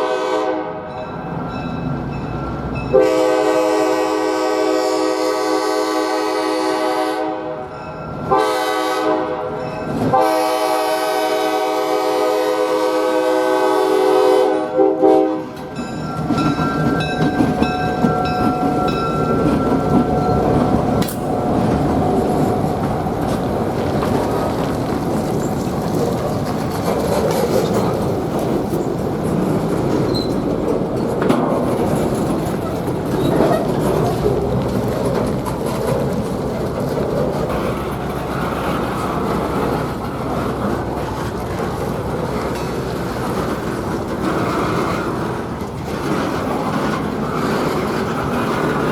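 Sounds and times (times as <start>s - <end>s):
loud air horn chord: 0.0s - 0.9s, 2.9s - 7.6s, 8.3s - 15.6s
train wheels rumbling on rails: 0.0s - 48.9s.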